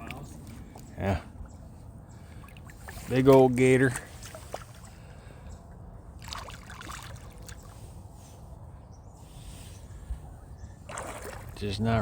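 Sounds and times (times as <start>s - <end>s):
water lapping and trickling: 0.0s - 8.6s, 9.2s - 12.0s
fish splashing in water: 6.2s - 7.8s, 10.8s - 11.6s.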